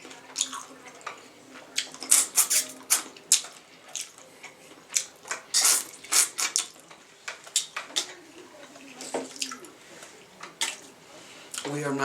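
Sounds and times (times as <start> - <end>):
wet sucking and slurping: 2.1 - 3.0, 5.5 - 6.6.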